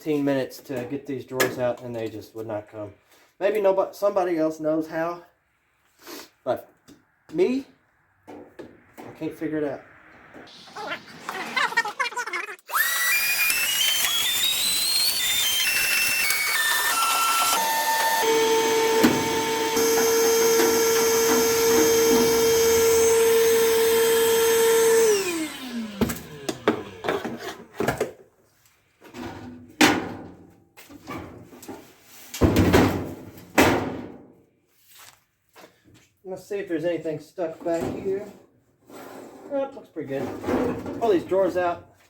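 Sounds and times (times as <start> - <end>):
handheld vacuum whining: 12.7 - 27.6.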